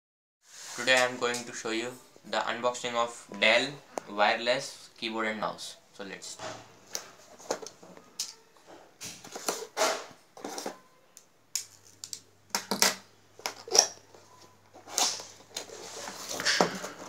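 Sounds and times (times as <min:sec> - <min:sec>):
cardboard packaging rustling: 0:13.6 - 0:17.0.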